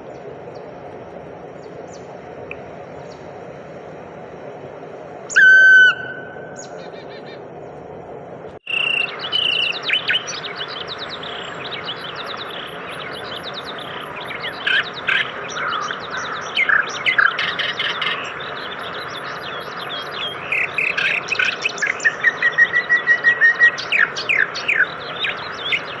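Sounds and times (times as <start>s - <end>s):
songbirds chirping and trilling: 0.0s - 26.0s
steady background hiss: 0.0s - 26.0s
loud whistled note: 5.3s - 6.6s.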